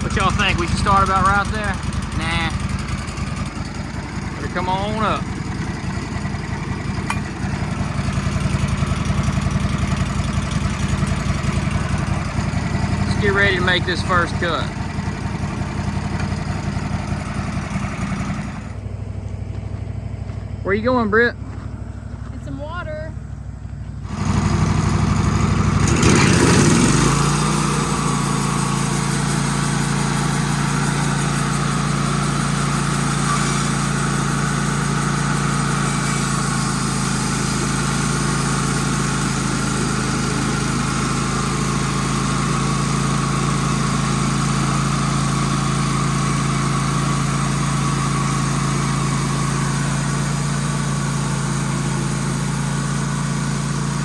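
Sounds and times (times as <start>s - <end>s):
high whine: 0.0s - 8.7s, 24.0s - 54.0s
sawmill engine running: 0.0s - 54.0s.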